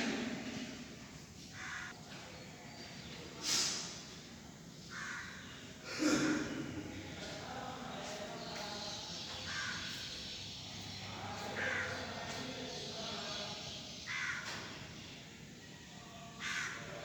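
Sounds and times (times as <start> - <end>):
background noise: 0.0 - 17.0
crows cawing: 1.6 - 2.0, 4.9 - 5.6, 9.5 - 10.0, 11.5 - 12.1, 14.1 - 14.8, 16.4 - 17.0.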